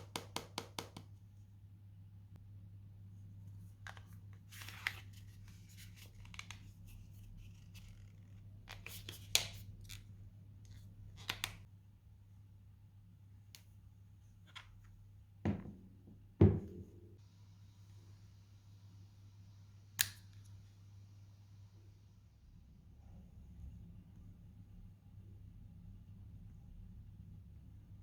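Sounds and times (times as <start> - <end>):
dull thuds of objects set down: 15.5 - 16.9.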